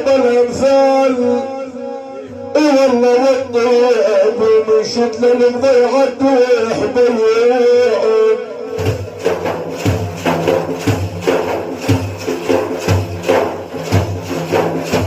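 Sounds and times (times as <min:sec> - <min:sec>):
frame drums beating: 0:08.7 - 0:15.0.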